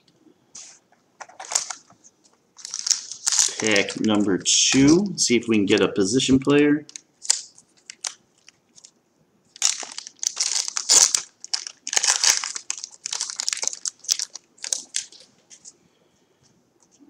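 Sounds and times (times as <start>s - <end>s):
card pack wrapper crinkling: 0.6s - 5.0s, 6.9s - 15.8s.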